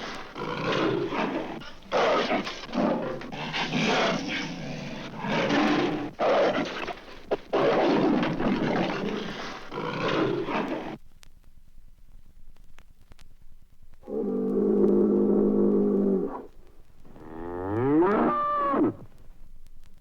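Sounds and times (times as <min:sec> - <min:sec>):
leopard snarling and growling: 0:00.0 - 0:11.0.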